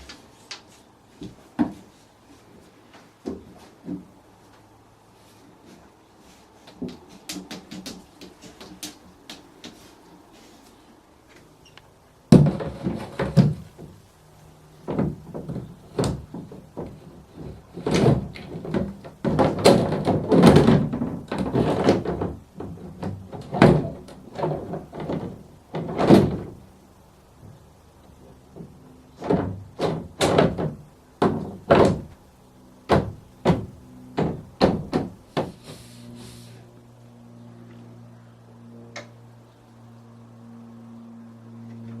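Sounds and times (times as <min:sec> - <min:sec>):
wiping strokes on glass: 0:35.3 - 0:36.8.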